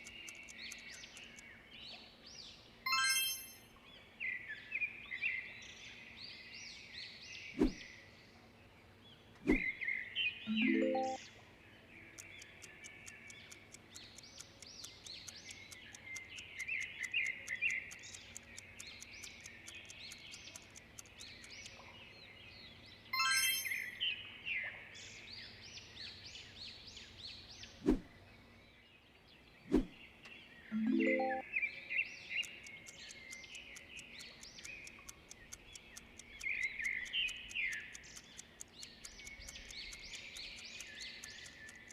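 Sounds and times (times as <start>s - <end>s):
faint rapid ticking: 0.0s - 1.6s, 12.0s - 21.9s, 32.2s - 41.9s
sharp clicks: 0.0s - 1.6s, 12.1s - 21.9s, 32.3s - 41.9s
small birds chirping: 0.0s - 41.9s.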